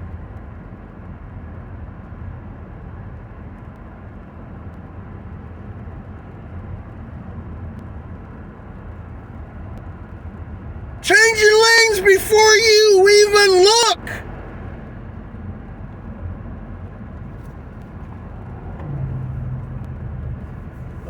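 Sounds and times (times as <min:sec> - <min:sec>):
vehicle road and engine rumble: 0:14.9 - 0:21.0.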